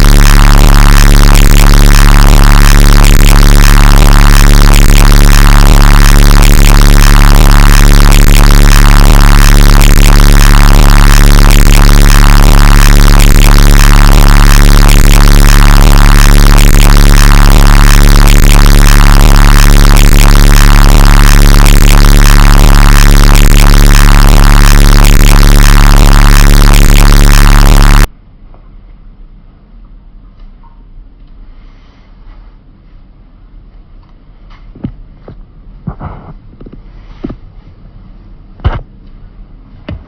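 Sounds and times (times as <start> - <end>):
loud distorted electronic music: 0.0 - 28.1.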